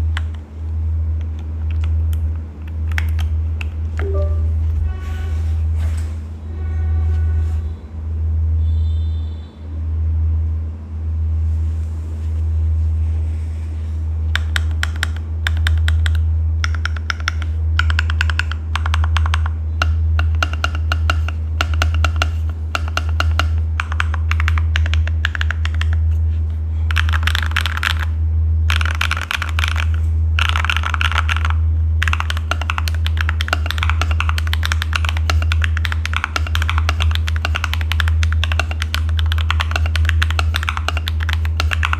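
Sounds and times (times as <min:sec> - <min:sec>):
keyboard typing: 0:01.2 - 0:04.6, 0:14.4 - 0:26.2, 0:26.9 - 0:28.1, 0:28.7 - 0:41.9.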